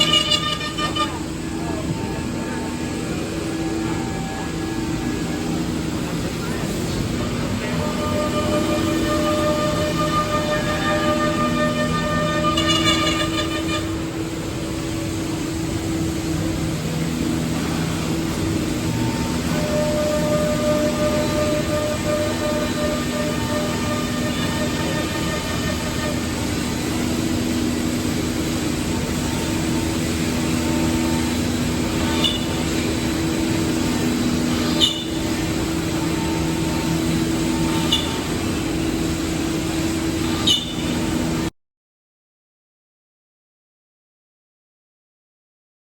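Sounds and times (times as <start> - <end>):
router spindles humming: 0.0 - 41.4
short high squeaks: 40.4 - 40.9.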